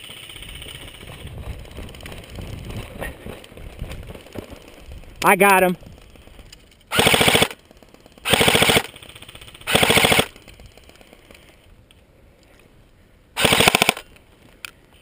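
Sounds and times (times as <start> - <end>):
airsoft rifle bursts: 6.9 - 11.5, 13.4 - 14.2.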